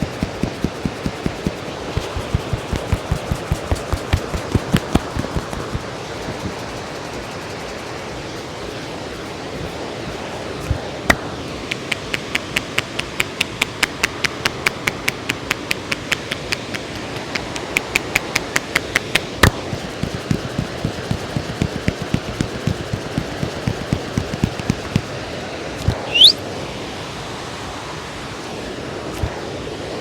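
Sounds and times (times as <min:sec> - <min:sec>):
sharp hand slap: 0:00.0 - 0:06.5
hands tapping on a head: 0:00.0 - 0:07.8, 0:10.7 - 0:25.2.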